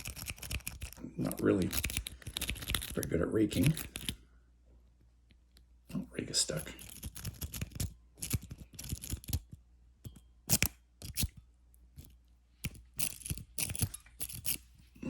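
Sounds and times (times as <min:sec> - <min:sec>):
lock pick scraping in padlock: 0:06.8 - 0:09.6, 0:10.5 - 0:11.4, 0:12.0 - 0:14.7.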